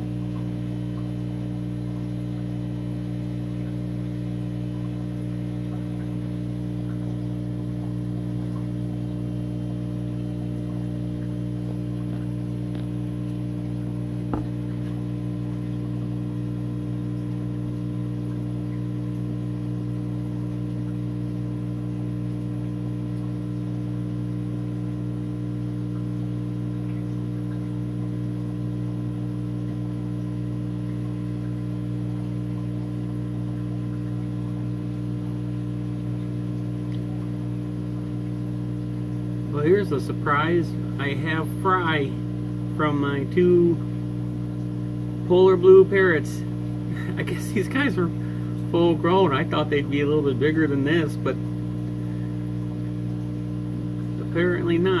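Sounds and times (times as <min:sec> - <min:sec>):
mains hum: 0:00.0 - 0:55.0.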